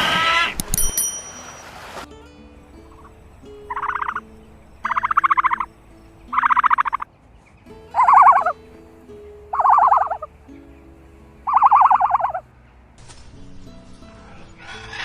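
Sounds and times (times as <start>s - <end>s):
soft background music: 0.2s - 15.0s
bird rattling calls: 3.7s - 4.2s, 4.8s - 5.7s, 6.3s - 7.0s, 8.0s - 8.5s, 9.6s - 10.3s, 11.5s - 12.4s.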